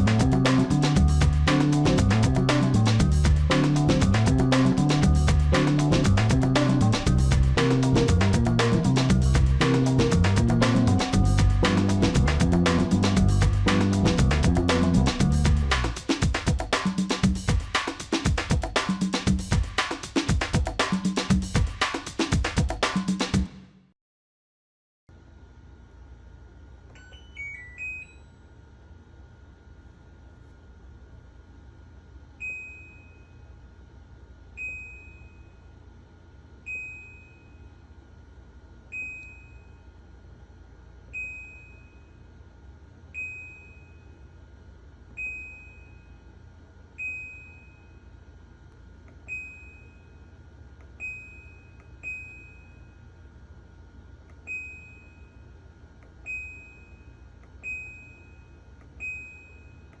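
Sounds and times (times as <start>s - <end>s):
steady low hum: 0.0s - 21.8s
short high electronic beeps: 27.0s - 28.4s.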